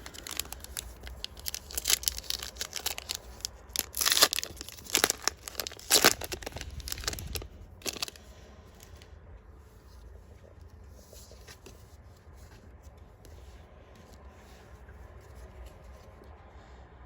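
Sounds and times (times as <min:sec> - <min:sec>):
foil wrappers tearing and crinkling: 0:00.0 - 0:08.2.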